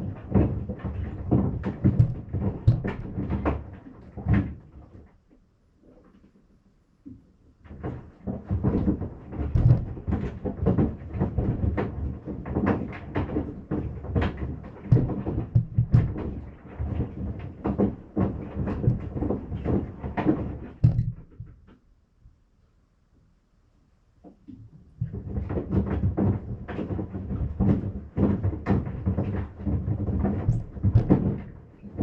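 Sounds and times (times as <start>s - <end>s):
sandals thumping in washing machine: 0.2s - 4.6s, 7.7s - 21.6s, 25.0s - 32.0s.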